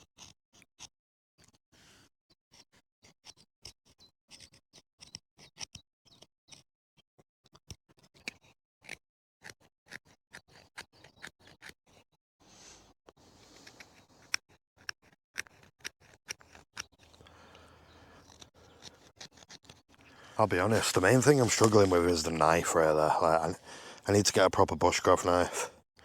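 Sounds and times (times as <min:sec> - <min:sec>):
knife scraping wood: 0:13.3 - 0:24.0.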